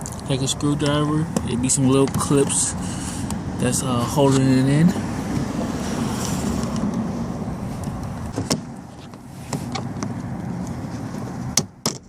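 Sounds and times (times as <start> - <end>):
low steady rumble: 0.0 - 9.5.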